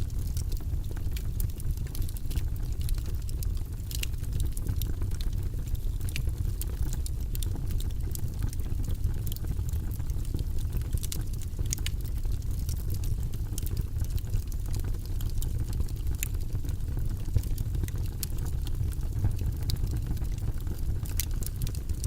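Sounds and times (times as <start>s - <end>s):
low rumble of flames: 0.0s - 22.0s
wood fire crackling and popping: 0.0s - 22.0s.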